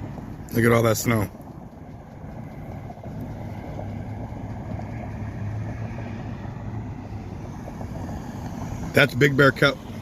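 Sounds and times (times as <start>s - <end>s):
engine hum: 0.0s - 10.0s
road rumble: 0.0s - 10.0s.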